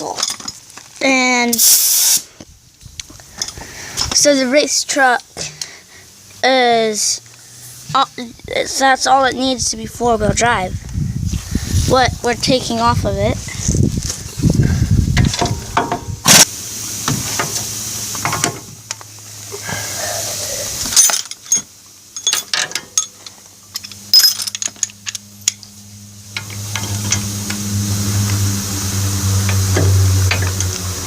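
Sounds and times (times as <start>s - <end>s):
metal tools clinking: 0.0s - 0.6s, 20.8s - 25.7s
low machine hum: 9.9s - 31.0s.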